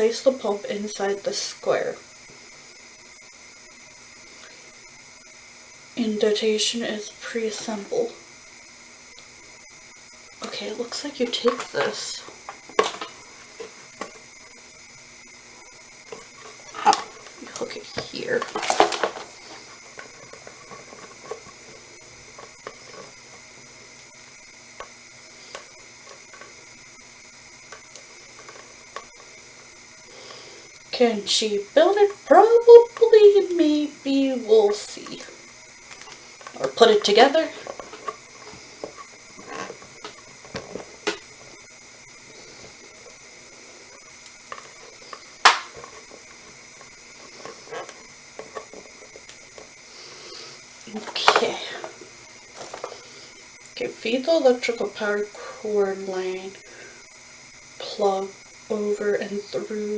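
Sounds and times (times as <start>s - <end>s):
faint steady hiss: 0.0s - 59.9s
plastic parts clicking: 10.4s - 14.3s, 16.1s - 23.6s, 24.8s - 26.6s, 27.7s - 29.3s, 34.7s - 41.6s, 44.0s - 49.7s, 50.9s - 53.0s.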